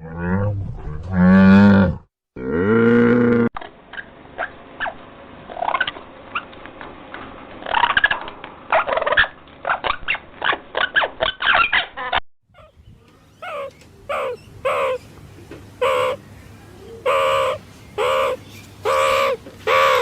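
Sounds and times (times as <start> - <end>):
bird calling: 12.6 - 15.2, 15.8 - 20.0
other bird calls: 12.6 - 15.2, 15.8 - 16.3, 16.9 - 20.0.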